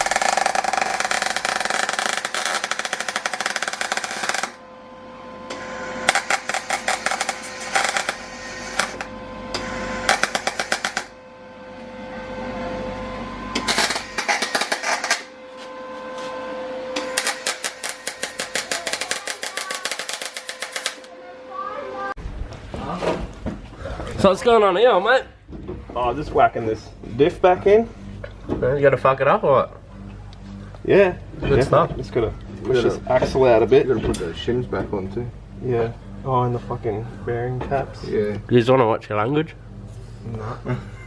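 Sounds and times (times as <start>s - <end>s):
welder crackling: 0.0s - 4.6s, 6.1s - 11.2s, 13.6s - 15.3s, 17.0s - 21.1s.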